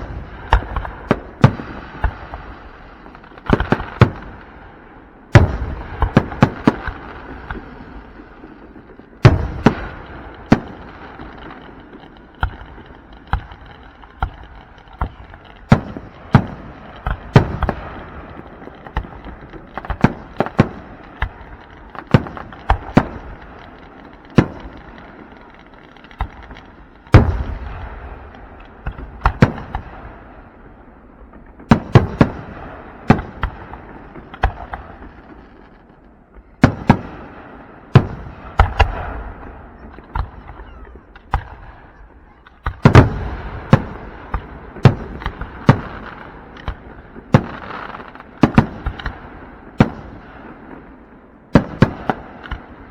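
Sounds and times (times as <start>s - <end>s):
fireworks booming: 0.0s - 52.9s
fireworks crackling: 0.0s - 52.9s.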